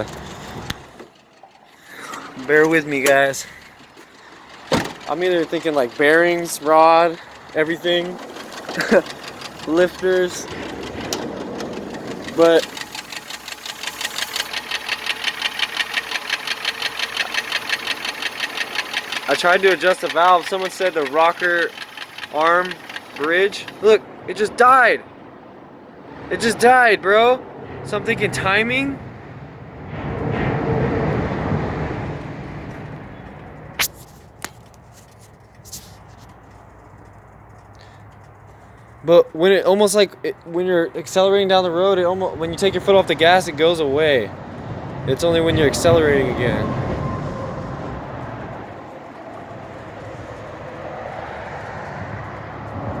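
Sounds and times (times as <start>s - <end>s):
sharp clicks: 0.0s - 23.9s
car engine: 0.0s - 53.0s.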